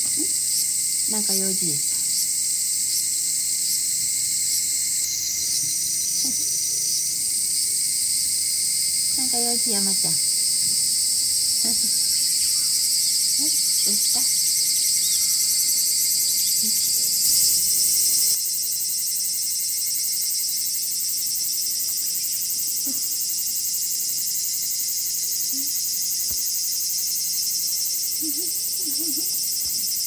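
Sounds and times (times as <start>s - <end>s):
cicadas buzzing: 0.0s - 30.0s.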